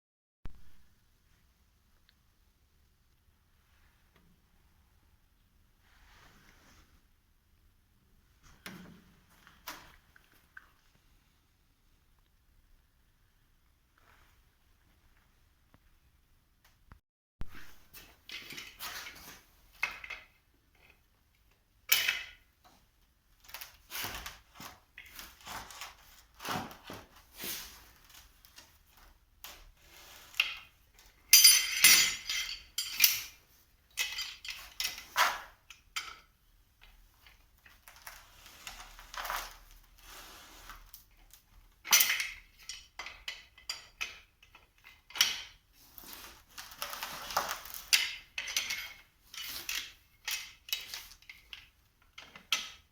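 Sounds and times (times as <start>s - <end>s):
metal tools clinking and clattering: 31.3s - 35.4s, 46.9s - 52.8s.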